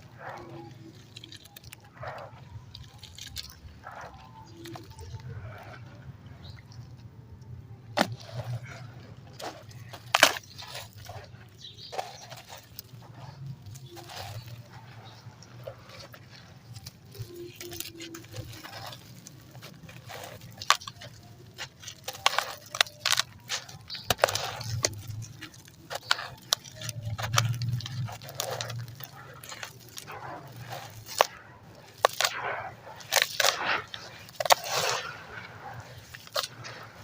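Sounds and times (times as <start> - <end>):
concrete crumbling in hands: 7.9 - 37.0.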